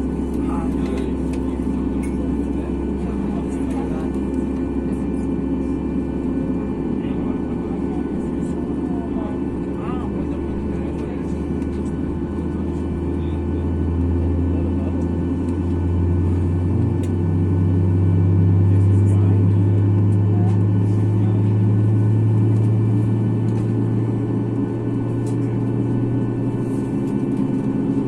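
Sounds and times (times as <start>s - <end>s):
jet engines humming in cabin: 0.0s - 28.0s.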